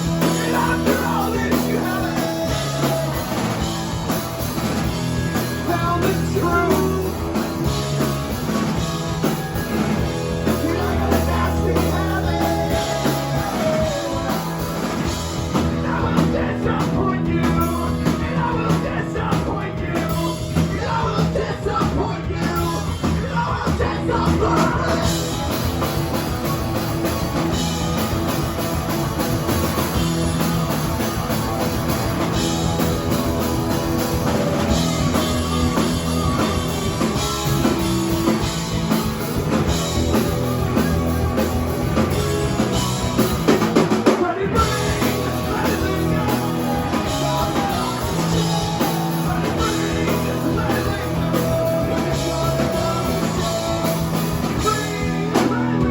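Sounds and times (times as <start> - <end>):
person singing: 0.0 - 3.6, 5.4 - 7.6, 10.3 - 25.6, 43.8 - 55.9
rock band playing live: 0.0 - 55.9.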